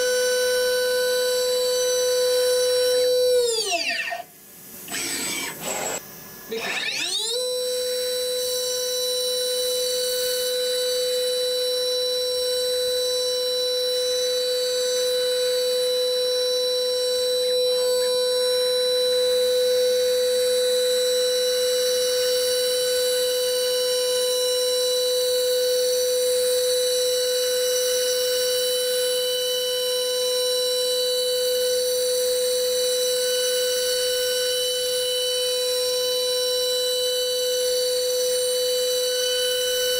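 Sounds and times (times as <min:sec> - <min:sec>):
machine spindle whining: 0:04.9 - 0:07.6.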